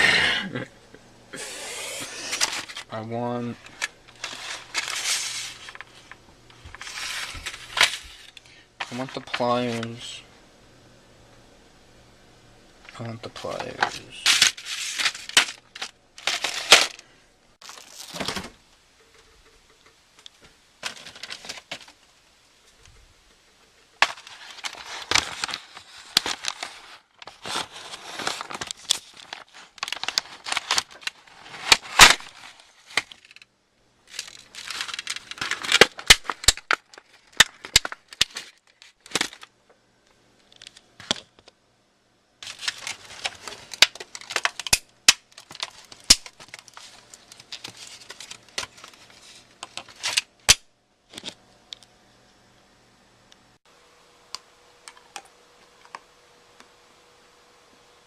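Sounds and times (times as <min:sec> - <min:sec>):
plastic packaging crinkling: 0:01.4 - 0:10.1, 0:12.8 - 0:18.6, 0:20.8 - 0:22.1, 0:24.0 - 0:39.5, 0:42.4 - 0:51.4.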